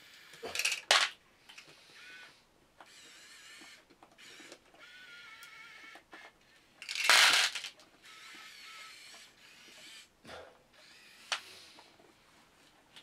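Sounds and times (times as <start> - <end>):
small electric motors whining: 1.6 - 10.1, 10.7 - 11.9.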